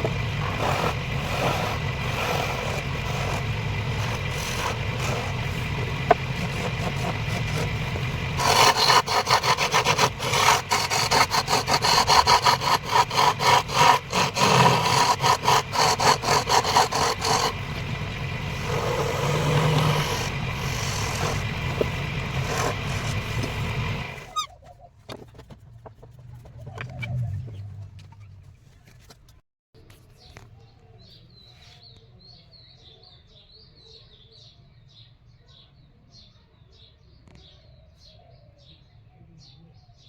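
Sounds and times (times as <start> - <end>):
wood lathe running: 0.0 - 24.4
tool scraping spinning wood: 0.0 - 29.4.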